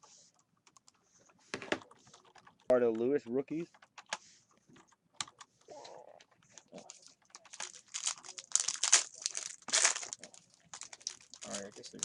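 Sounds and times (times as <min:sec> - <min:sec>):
trading cards clicking and rustling: 0:06.2 - 0:12.0.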